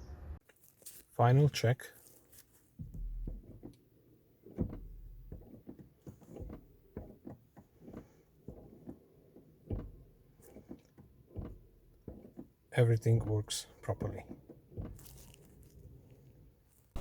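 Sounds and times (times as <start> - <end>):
dull thumps: 2.7 - 3.8, 4.5 - 16.0.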